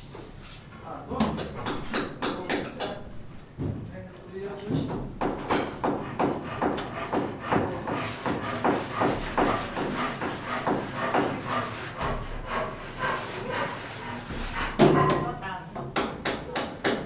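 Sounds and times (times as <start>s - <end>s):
hand saw cutting wood: 5.4s - 15.2s.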